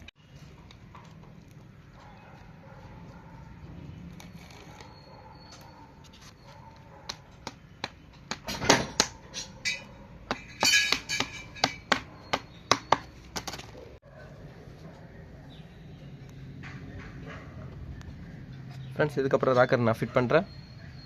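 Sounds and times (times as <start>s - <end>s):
metal tools clinking and knocking: 8.4s - 12.3s.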